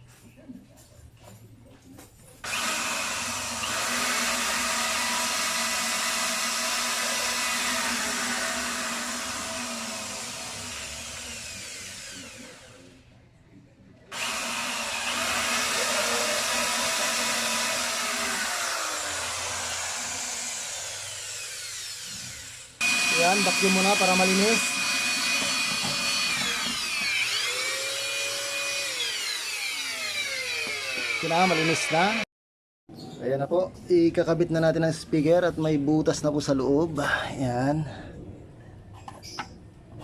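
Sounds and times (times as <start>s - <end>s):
electric drill boring wood: 2.4s - 13.0s, 14.1s - 32.2s.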